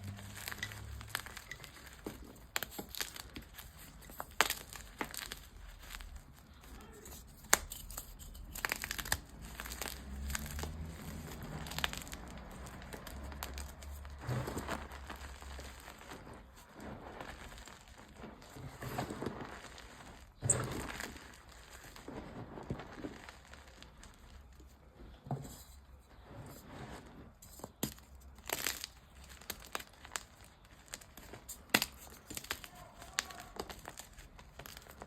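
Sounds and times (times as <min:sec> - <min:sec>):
chalk crunching by hand: 0:00.0 - 0:24.5.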